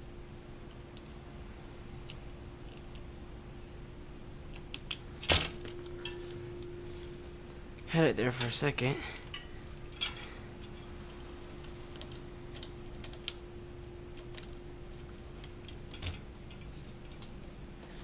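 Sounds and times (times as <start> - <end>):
faint steady hum: 0.0 - 18.0
metal parts clicking: 8.3 - 11.3, 15.4 - 17.4.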